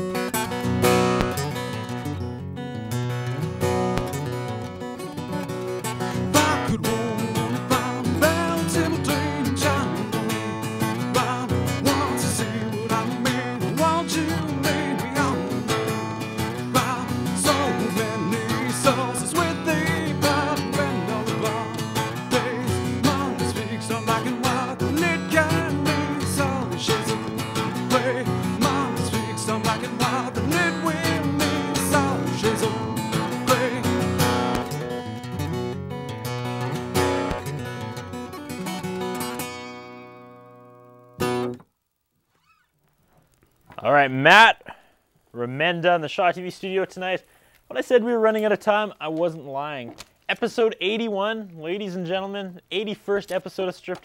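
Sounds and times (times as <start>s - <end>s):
strummed acoustic guitar: 0.0s - 41.7s.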